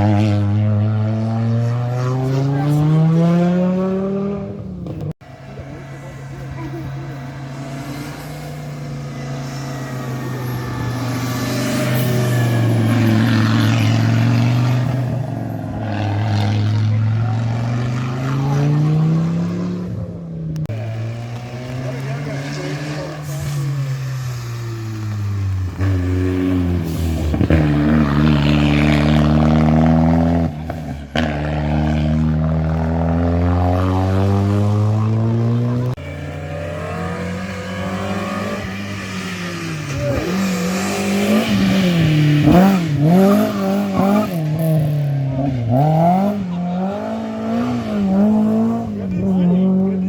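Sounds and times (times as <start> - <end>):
engine revving up and down: 0.0 - 50.0
rally car engine accelerating: 0.0 - 50.0.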